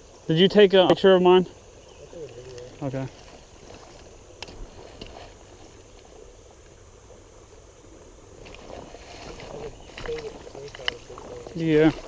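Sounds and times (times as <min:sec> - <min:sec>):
river water running: 0:00.0 - 0:12.0
faint clicks: 0:02.2 - 0:02.8, 0:10.0 - 0:11.1.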